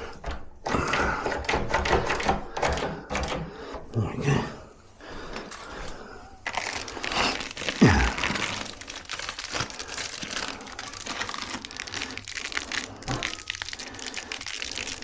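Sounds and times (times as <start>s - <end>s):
crinkling handling noise: 4.9s - 15.0s.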